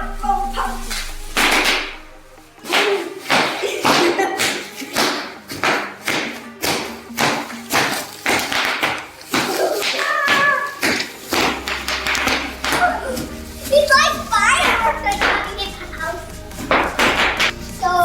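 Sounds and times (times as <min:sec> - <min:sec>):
bubble wrap popping: 0:00.0 - 0:18.0.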